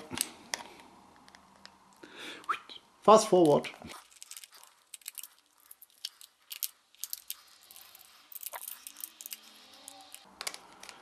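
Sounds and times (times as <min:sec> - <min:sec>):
packaging clicking and crinkling: 0:03.9 - 0:11.0.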